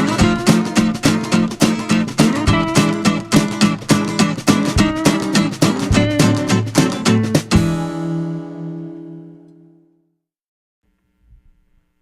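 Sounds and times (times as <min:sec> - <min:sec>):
fast guitar strumming: 0:00.0 - 0:09.5.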